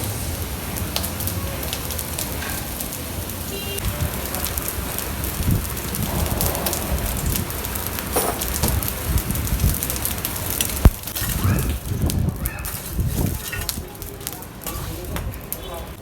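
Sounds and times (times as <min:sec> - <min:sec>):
crackling with low rumble: 0:00.0 - 0:16.0.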